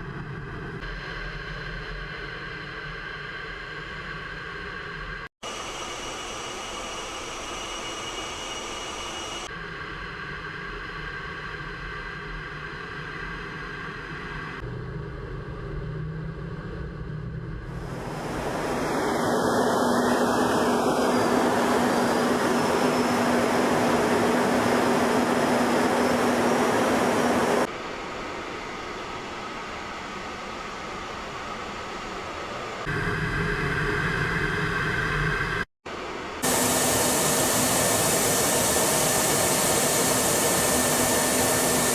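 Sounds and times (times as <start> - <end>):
low hum: 0.0 - 27.7, 32.9 - 35.7
jet engine rushing: 17.7 - 27.7, 36.4 - 41.9.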